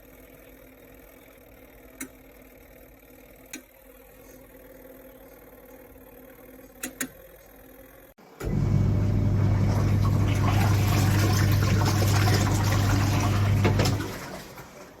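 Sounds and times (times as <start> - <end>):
washing machine motor hum: 0.4 - 15.0
water churning in tub: 8.5 - 15.0.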